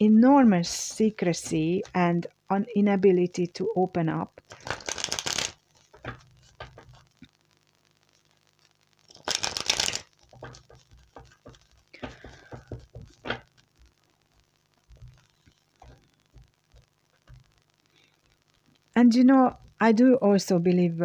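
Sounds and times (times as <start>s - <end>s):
cards being shuffled: 4.4s - 7.2s, 9.1s - 13.7s
card taps and slaps: 4.6s - 6.9s, 9.2s - 13.5s.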